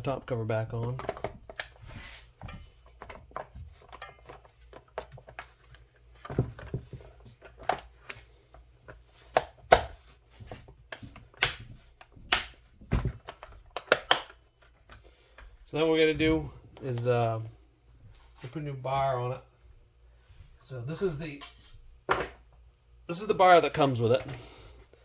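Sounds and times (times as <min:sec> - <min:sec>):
chainsaw cover clicks and knocks: 0:13.4 - 0:14.3.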